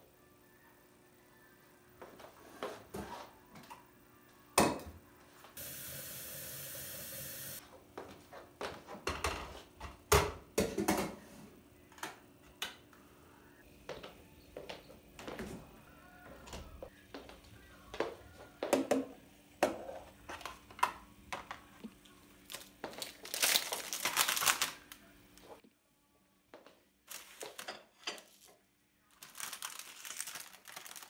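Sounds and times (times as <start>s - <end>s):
dishes and utensils clinking: 27.5s - 28.5s.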